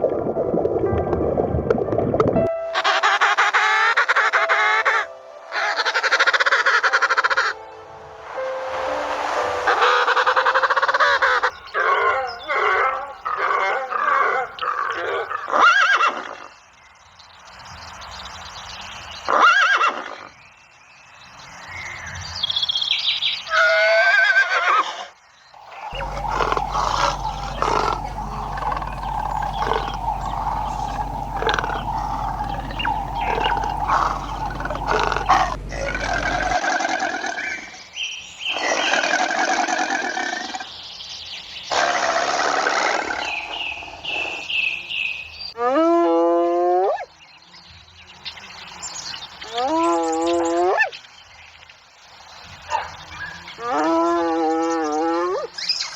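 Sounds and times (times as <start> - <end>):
rough animal calling: 11.0 - 16.4, 25.7 - 37.6
low hum: 25.6 - 36.7.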